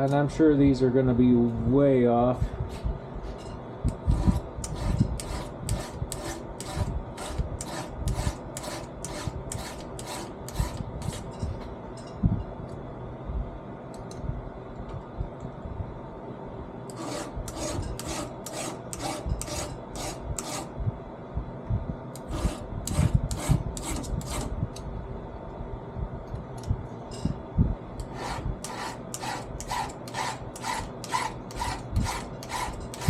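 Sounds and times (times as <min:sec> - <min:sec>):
file rasping on metal: 0:04.0 - 0:11.3, 0:16.9 - 0:20.7, 0:22.2 - 0:24.5, 0:28.0 - 0:33.0.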